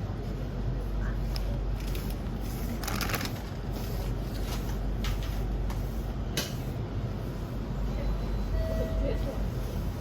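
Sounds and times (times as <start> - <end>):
plastic snack packets rustling: 2.8 - 3.5.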